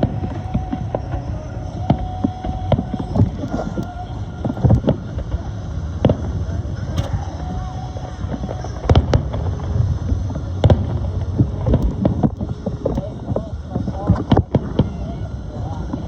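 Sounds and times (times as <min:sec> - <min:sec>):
fireworks bangs: 0:00.0 - 0:16.0
steady low rumble: 0:00.0 - 0:16.0.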